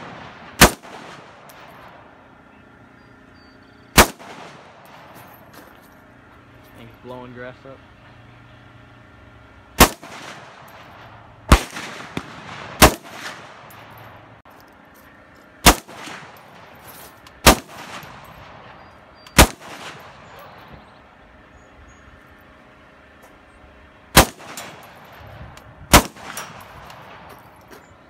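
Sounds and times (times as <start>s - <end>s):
gunshots with echo: 0.0s - 1.5s, 9.8s - 13.7s, 17.4s - 20.8s.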